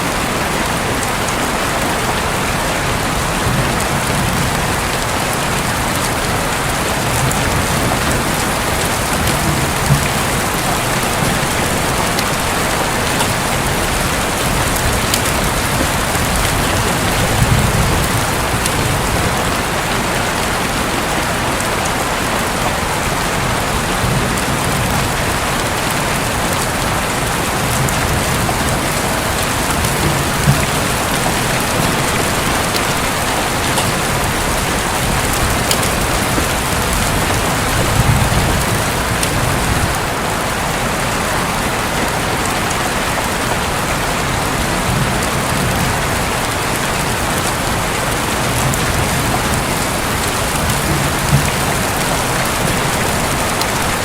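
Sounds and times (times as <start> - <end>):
heavy rain drumming on a roof: 0.0 - 54.0
distant thunder rumble: 2.2 - 40.3.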